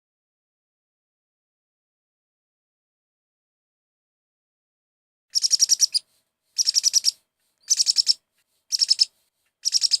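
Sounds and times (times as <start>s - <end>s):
bird chirping trill: 5.3s - 6.0s, 6.6s - 10.0s.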